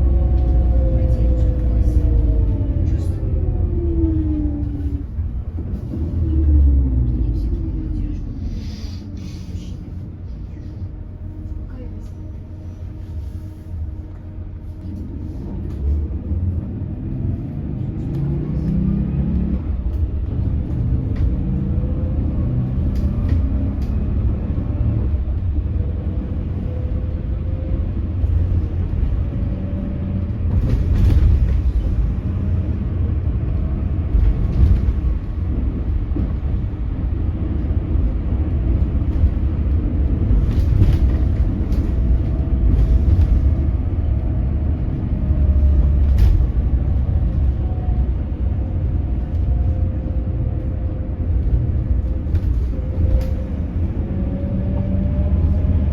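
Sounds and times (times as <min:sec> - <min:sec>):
low road rumble: 0:00.0 - 0:55.9.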